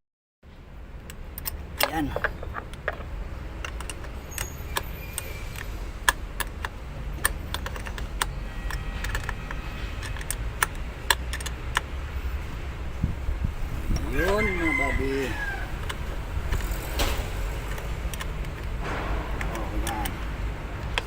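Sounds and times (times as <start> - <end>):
hand tools clicking on metal: 1.4 - 4.9.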